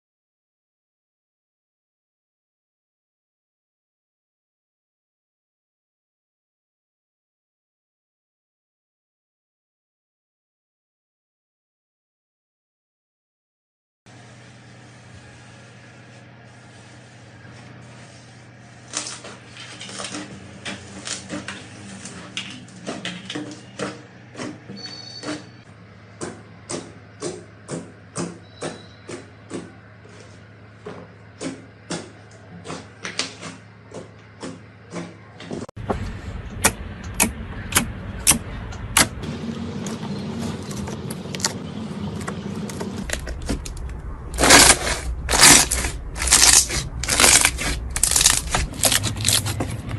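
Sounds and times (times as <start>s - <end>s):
steady low hum: 25.5s - 49.9s.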